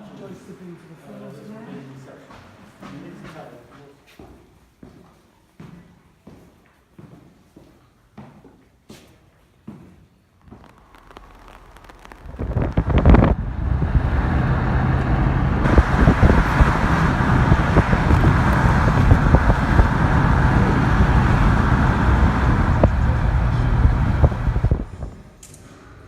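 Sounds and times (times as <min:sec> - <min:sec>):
car engine and road noise: 0:10.4 - 0:25.3.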